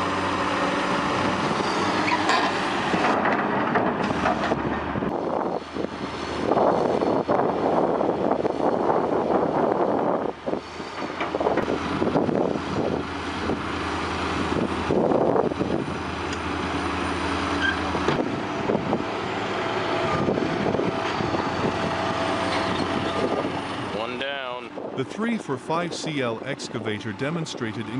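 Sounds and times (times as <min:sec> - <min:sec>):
heavy diesel machinery running: 0:00.0 - 0:27.9
metal knocks and clanks: 0:02.1 - 0:04.7.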